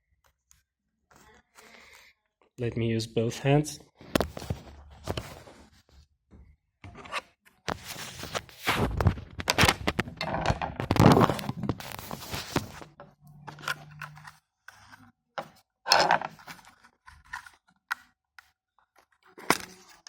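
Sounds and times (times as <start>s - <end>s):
clicks and crackles: 8.3s - 12.8s
plastic packaging crinkling and tearing: 10.8s - 12.9s.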